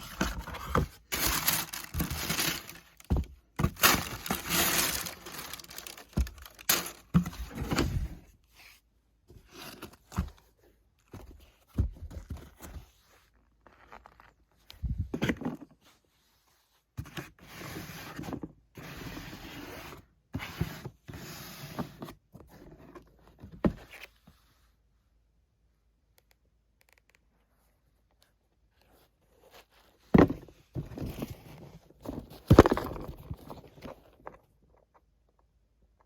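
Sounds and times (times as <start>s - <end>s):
shoebox and paper rustling: 0.0s - 8.3s, 28.8s - 34.6s.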